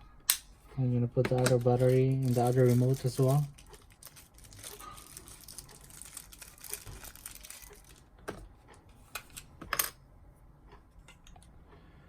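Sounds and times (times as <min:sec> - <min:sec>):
plastic crinkling: 0:01.4 - 0:08.1.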